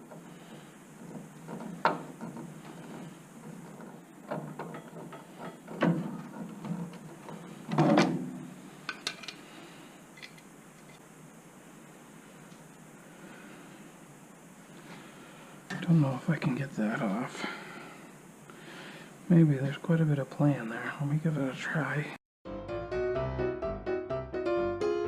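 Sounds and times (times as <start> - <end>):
rattling clunk: 0.0 - 9.4
clicks and knocks of tools: 1.0 - 8.1, 8.8 - 9.4, 10.1 - 11.0.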